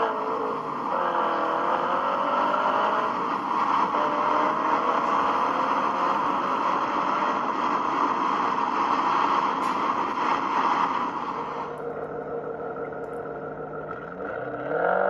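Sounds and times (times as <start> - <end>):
dense rushing noise: 0.0 - 14.2
car exhaust running: 0.0 - 15.0.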